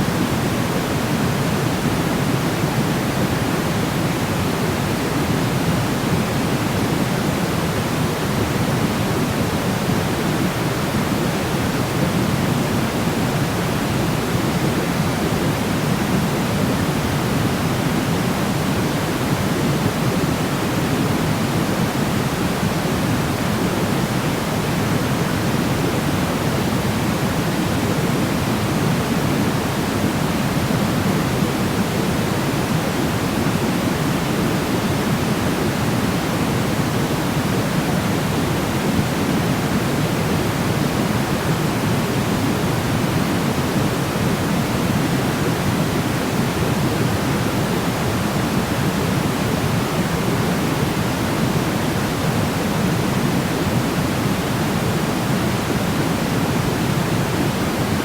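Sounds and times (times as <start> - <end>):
steady pink noise: 0.0 - 58.0.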